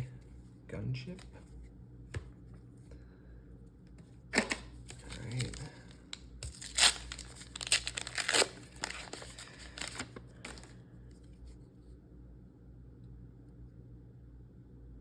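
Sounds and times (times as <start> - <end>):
foil pack tearing and crinkling: 4.4 - 10.8.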